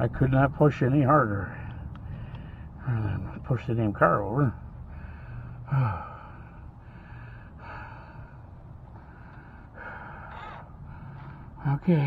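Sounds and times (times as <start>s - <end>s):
man breathing hard: 1.6s - 2.8s, 4.7s - 11.6s.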